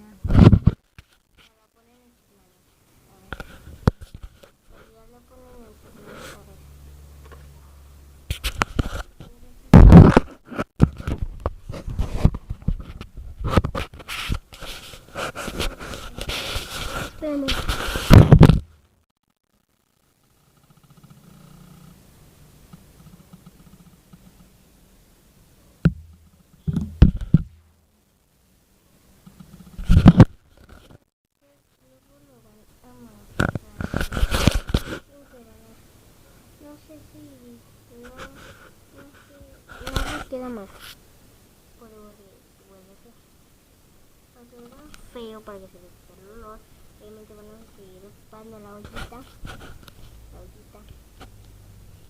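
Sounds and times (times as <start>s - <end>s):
thumps and scrapes: 0.2s - 1.6s, 3.2s - 6.5s, 8.3s - 18.9s, 25.8s - 27.7s, 29.2s - 31.1s, 33.3s - 35.1s, 38.0s - 41.0s, 48.7s - 50.2s.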